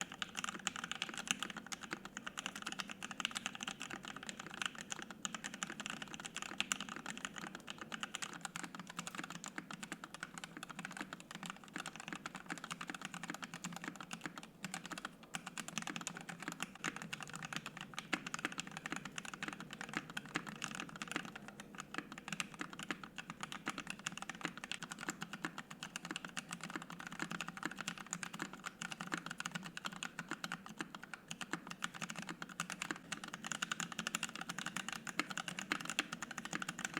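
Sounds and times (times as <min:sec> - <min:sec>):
mechanical keyboard typing: 0:00.0 - 0:36.9.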